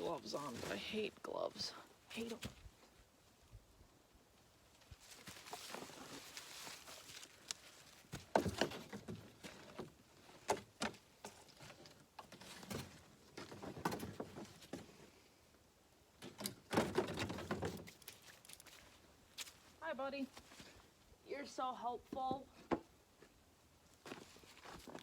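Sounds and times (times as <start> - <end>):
wooden lumber knocking and clattering: 8.1 - 14.9, 16.2 - 17.9.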